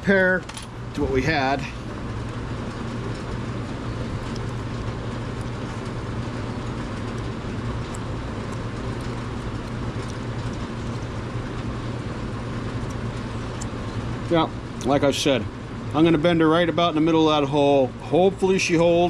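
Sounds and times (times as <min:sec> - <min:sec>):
machine humming and hissing: 0:00.0 - 0:19.0.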